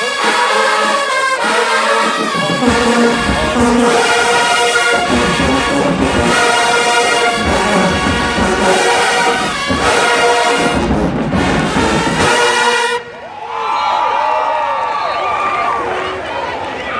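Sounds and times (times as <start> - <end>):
marching band brass: 0.0 - 13.4
steady drum beat: 2.2 - 13.0.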